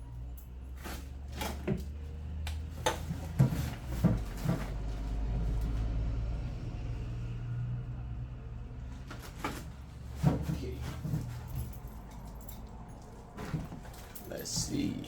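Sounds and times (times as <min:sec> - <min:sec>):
tools being handled knocking: 0:09.5 - 0:15.0.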